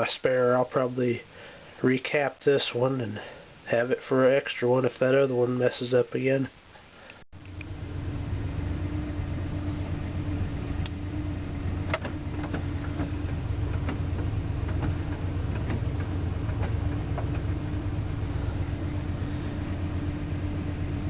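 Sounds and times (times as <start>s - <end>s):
truck engine running: 7.4s - 21.0s.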